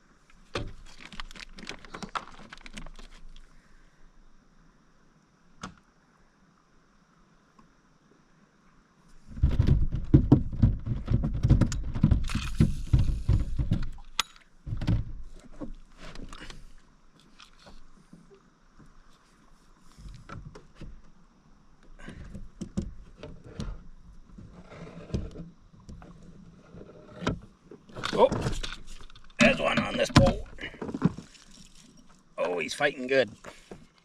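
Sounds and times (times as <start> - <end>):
thumps and rattling in a kayak: 0.3 - 3.5, 9.1 - 32.4, 33.2 - 34.0.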